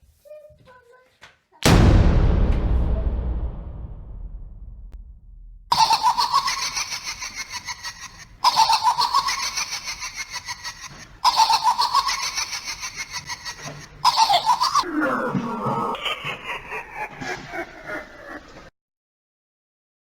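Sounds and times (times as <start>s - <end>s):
recorded laugh: 5.7s - 18.7s.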